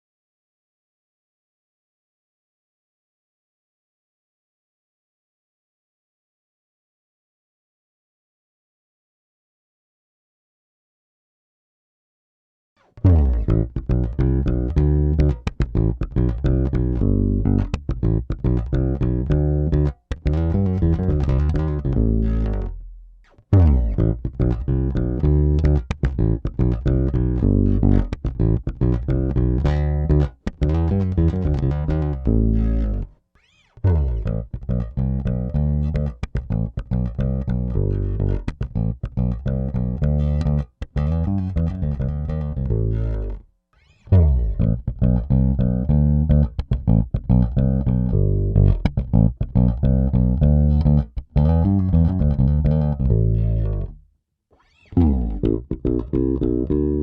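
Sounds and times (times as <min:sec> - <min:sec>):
electric bass played fingerstyle: 0:13.0 - 0:33.1, 0:33.8 - 0:54.0, 0:54.6 - 0:57.0.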